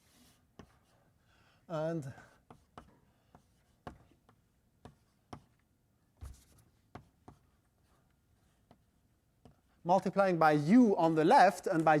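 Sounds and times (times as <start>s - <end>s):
chalk writing on blackboard: 0.0s - 1.2s, 2.3s - 9.8s.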